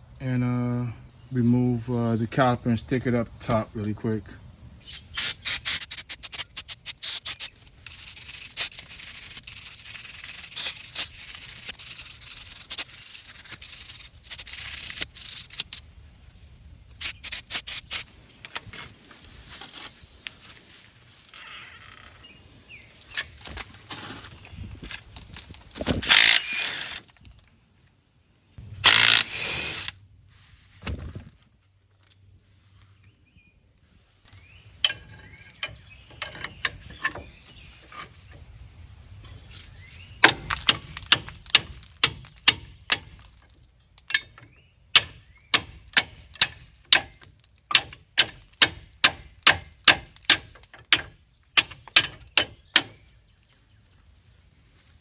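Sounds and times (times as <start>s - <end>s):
aerosol spray bursts: 4.8s - 15.8s, 17.0s - 18.0s
hand ratchet clicking: 4.8s - 15.8s, 17.0s - 18.0s, 26.0s - 26.9s, 28.9s - 29.9s.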